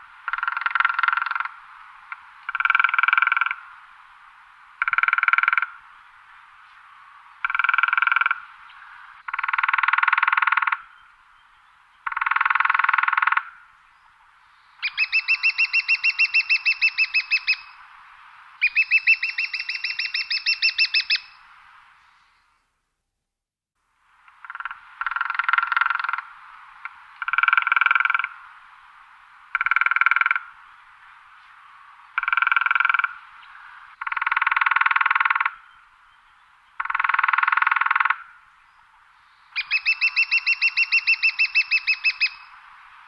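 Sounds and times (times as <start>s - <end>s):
woodpecker drumming on wood: 0.2s - 3.6s, 4.8s - 5.8s, 7.4s - 8.4s, 9.3s - 10.9s, 12.0s - 13.6s, 24.3s - 28.4s, 29.5s - 30.5s, 32.2s - 33.2s, 34.0s - 35.6s, 36.8s - 38.3s.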